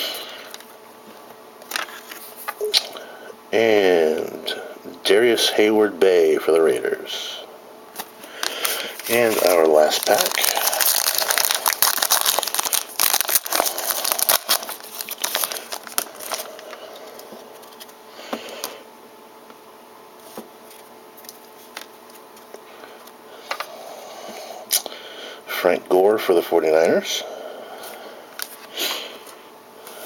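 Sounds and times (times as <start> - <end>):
wrapper crinkling and tearing: 8.0 - 17.9.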